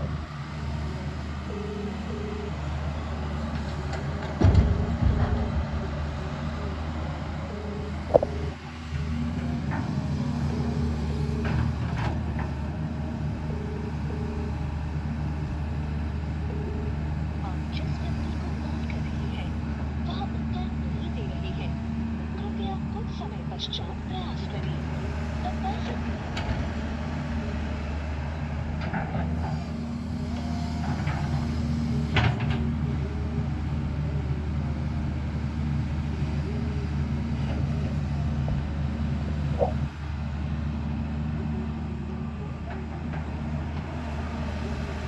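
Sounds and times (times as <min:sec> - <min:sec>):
excavator diesel engine running: 0:00.0 - 0:45.0
short knocks: 0:08.1 - 0:08.4.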